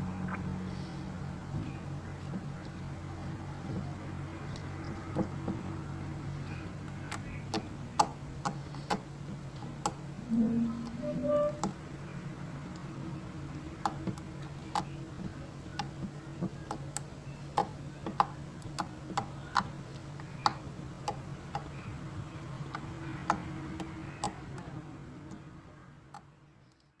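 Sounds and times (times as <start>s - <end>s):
low hum: 0.0s - 8.0s, 10.1s - 15.7s.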